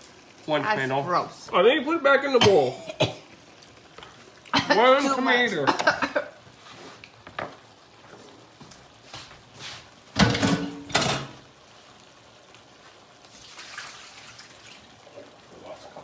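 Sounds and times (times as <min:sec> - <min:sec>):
kitchenware clattering: 0:10.2 - 0:11.4.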